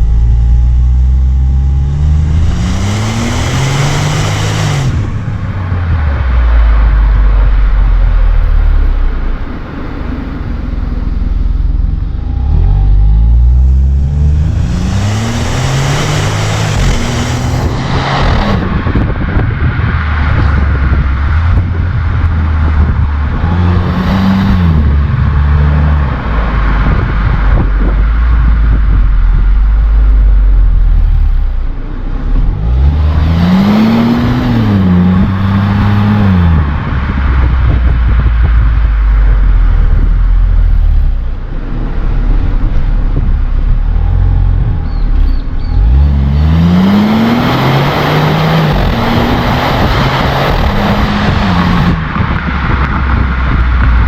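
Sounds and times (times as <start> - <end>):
car engine idling and revving: 0.0 - 54.0.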